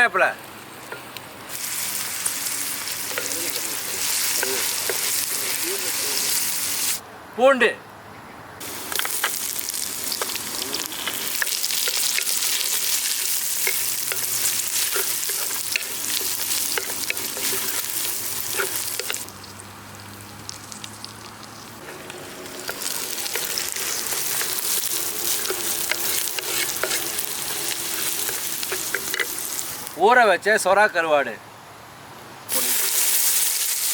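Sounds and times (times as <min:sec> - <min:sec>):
garlic sizzling in hot oil: 0:00.4 - 0:07.0, 0:08.6 - 0:30.0, 0:32.5 - 0:33.9
spoon scraping a clay pot: 0:25.2 - 0:29.5.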